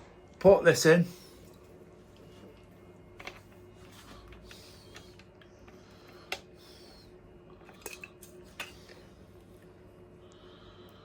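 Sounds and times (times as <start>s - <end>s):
clicks and clinks of small parts: 7.6s - 9.0s.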